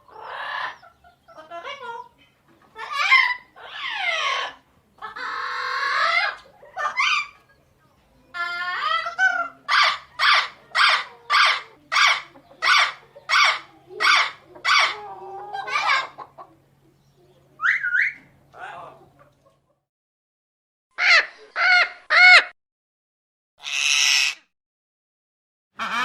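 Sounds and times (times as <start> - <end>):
parrot harsh calls: 0.1 - 0.8, 2.8 - 7.4, 8.4 - 15.0, 21.0 - 22.5, 23.6 - 24.5, 25.8 - 26.0
parrot squawks: 8.5 - 15.0, 21.0 - 22.5, 23.6 - 24.5, 25.8 - 26.0
parrot whistle-like call: 17.6 - 18.2.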